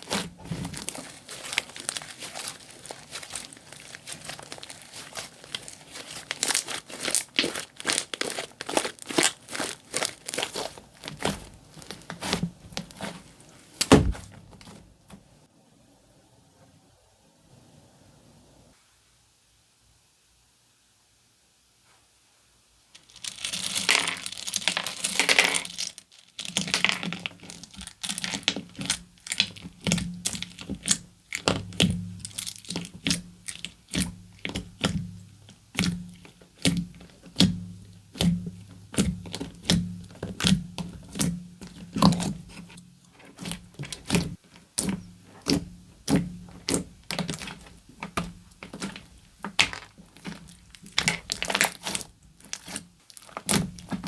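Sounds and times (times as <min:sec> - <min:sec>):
slime clicking and popping: 0:00.1 - 0:13.2, 0:43.4 - 0:54.0.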